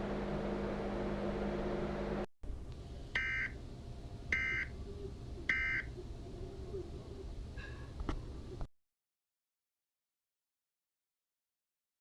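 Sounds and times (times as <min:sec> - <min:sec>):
low electrical hum: 0:00.0 - 0:08.7.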